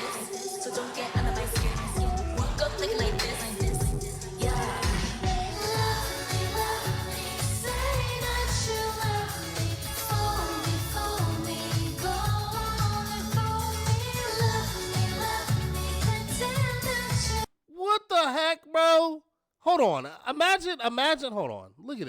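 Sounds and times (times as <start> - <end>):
women singing pop song: 0.0 - 17.5
bass beat: 1.2 - 17.4.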